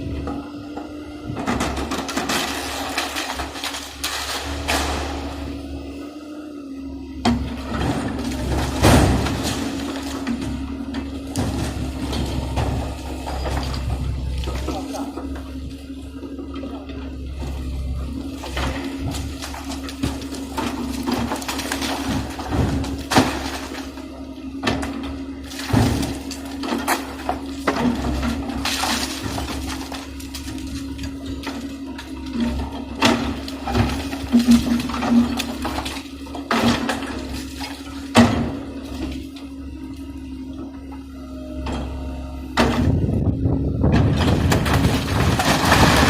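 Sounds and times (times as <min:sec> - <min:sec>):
excavator engine humming: 0:00.0 - 0:46.0
building material crashing: 0:01.4 - 0:05.4, 0:07.4 - 0:15.4, 0:18.3 - 0:24.1, 0:24.7 - 0:31.8, 0:32.4 - 0:38.8, 0:43.8 - 0:46.0.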